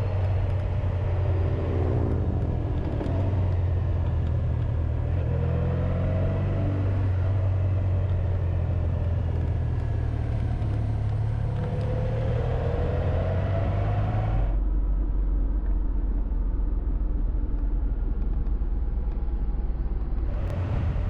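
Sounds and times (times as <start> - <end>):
motorcycle engine running: 0.0 - 5.2
wind rush on camera: 0.0 - 14.6, 17.5 - 21.0.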